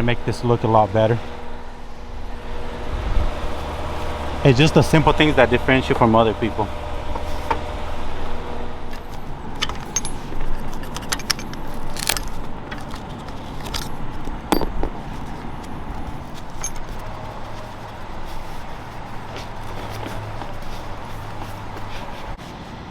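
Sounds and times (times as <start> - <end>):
hands handling pipe insulation: 8.9 - 22.6.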